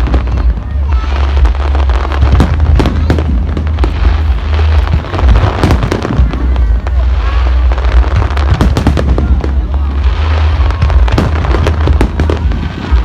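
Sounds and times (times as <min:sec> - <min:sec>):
fireworks bangs and crackles: 0:00.0 - 0:13.0
low rumble of fireworks: 0:00.0 - 0:13.0.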